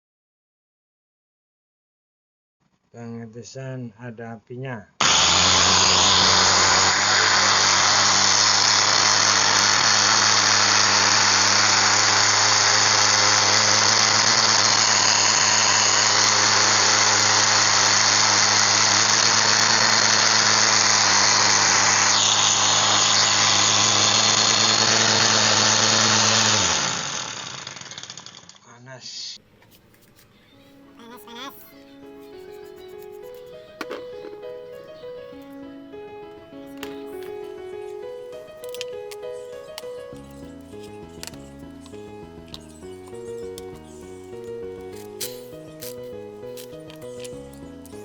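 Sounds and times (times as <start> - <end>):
angle grinder whining: 5.0 - 28.6, 32.1 - 35.6, 36.5 - 48.0
grinder spinning down: 5.0 - 28.6, 36.8 - 48.0.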